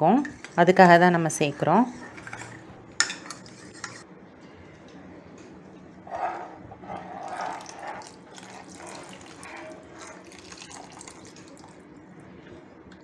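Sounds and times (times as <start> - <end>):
liquid splashing and sloshing in pot: 6.1 - 12.5.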